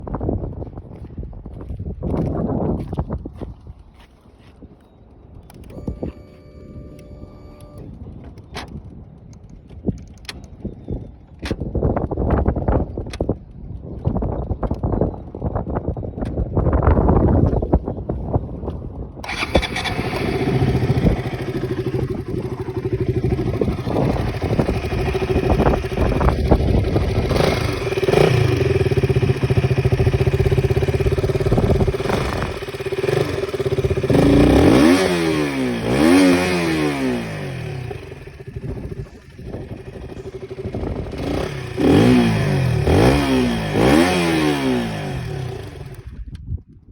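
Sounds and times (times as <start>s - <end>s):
motorcycle engine idling: 19.2s - 46.2s
motorcycle engine revving: 19.2s - 46.3s.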